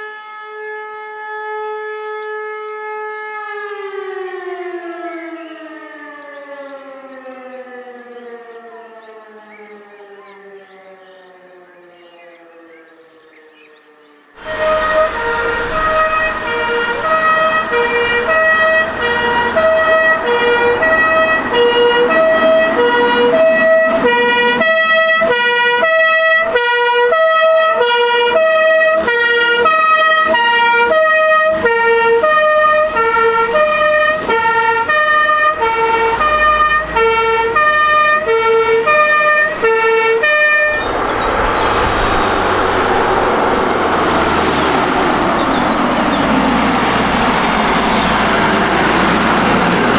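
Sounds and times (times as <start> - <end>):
two-tone emergency siren: 0.0 - 13.7, 14.4 - 49.9
vehicle engine and tyre noise: 14.4 - 27.2, 27.8 - 49.9.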